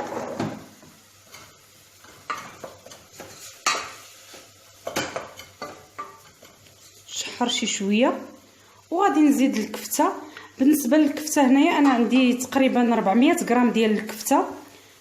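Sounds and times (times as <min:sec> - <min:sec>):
spoon scraping a cooking pot: 0:02.1 - 0:07.2.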